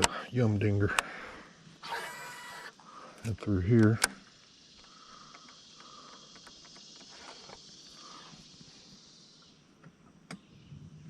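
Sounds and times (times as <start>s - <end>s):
high-pitched insect drone: 0.0s - 9.8s
light clicks: 0.8s - 1.2s, 3.2s - 7.6s.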